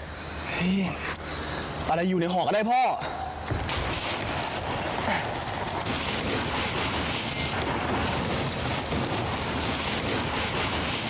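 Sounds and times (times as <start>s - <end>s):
steady rushing noise: 3.5s - 11.0s.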